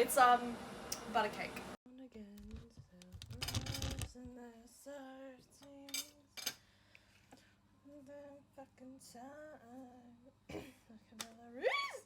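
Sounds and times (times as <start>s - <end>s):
cutlery clinking on a plate: 5.9s - 6.6s
woman humming: 11.4s - 12.0s.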